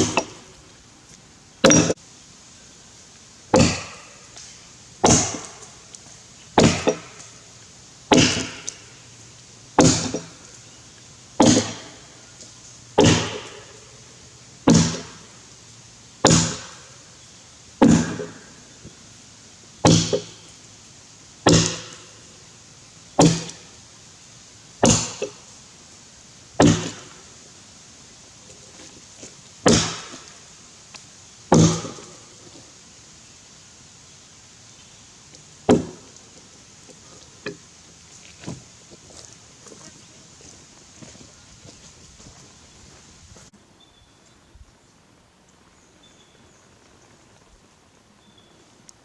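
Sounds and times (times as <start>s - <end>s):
axe chopping into log: 0.0s - 0.4s, 1.6s - 2.0s, 3.6s - 4.0s, 5.0s - 5.6s, 6.6s - 7.2s, 8.1s - 8.8s, 9.8s - 10.4s, 11.4s - 12.0s, 13.0s - 13.7s, 14.7s - 15.2s, 16.2s - 16.8s, 17.8s - 18.4s, 19.8s - 20.3s, 21.5s - 22.0s, 23.2s - 23.6s, 24.8s - 25.4s, 26.6s - 27.2s, 29.6s - 30.3s, 31.5s - 32.1s, 35.7s - 36.0s.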